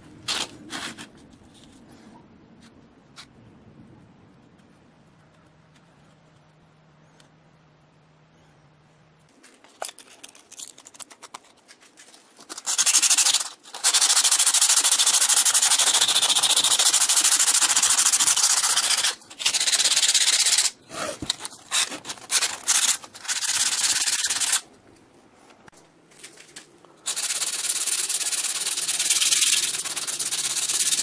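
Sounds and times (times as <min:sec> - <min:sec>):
clicks and handling noises: 0:09.2 - 0:12.8.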